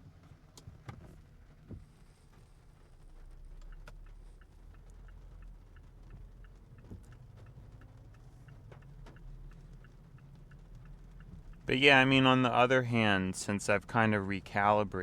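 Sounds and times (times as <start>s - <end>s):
low rumble of car cabin: 0.0s - 15.0s
car turn signal clicking: 3.2s - 12.3s.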